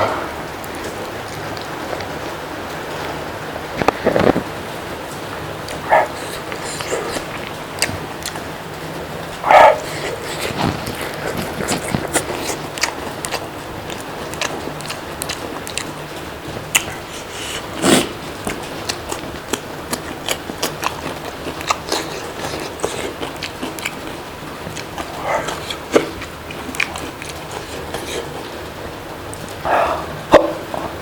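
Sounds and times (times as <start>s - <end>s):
person chewing food: 5.2s - 28.7s.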